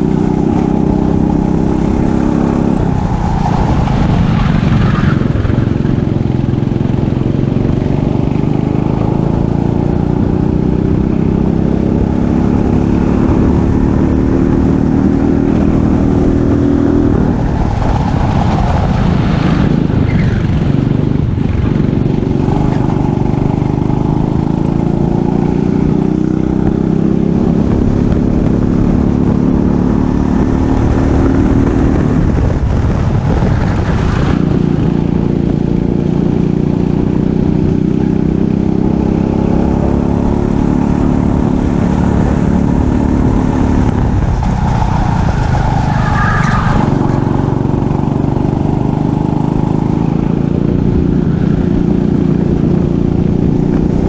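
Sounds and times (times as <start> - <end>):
kart engine at full throttle: 0.0 - 54.0.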